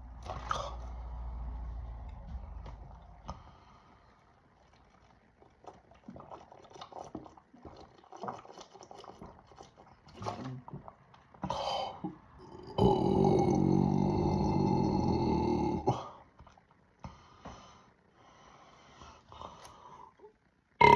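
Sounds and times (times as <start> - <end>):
person gulping soda: 2.7 - 17.1, 20.2 - 20.9
loud burp: 12.0 - 16.2.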